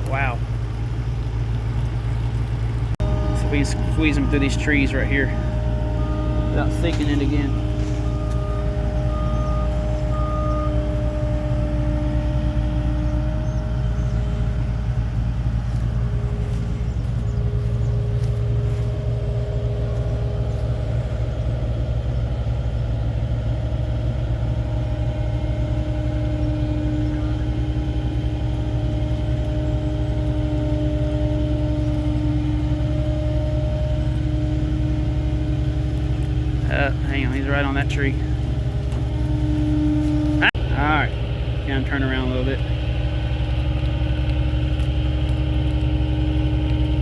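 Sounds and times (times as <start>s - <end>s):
heavy machine engine humming: 0.0s - 47.0s.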